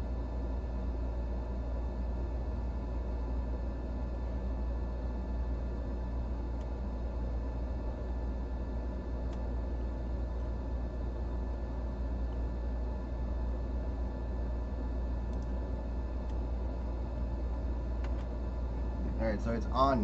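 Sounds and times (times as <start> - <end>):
low hum: 2.6 - 20.0
faint small clicks: 15.3 - 15.6.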